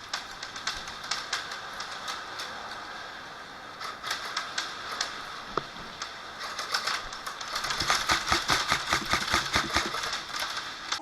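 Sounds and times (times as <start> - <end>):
airsoft gunfire: 7.6 - 10.2.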